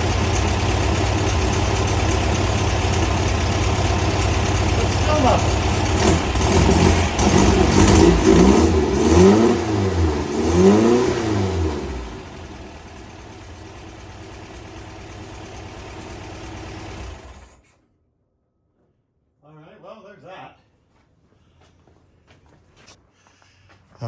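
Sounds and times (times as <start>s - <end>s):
car engine revving and idling: 0.0s - 17.6s.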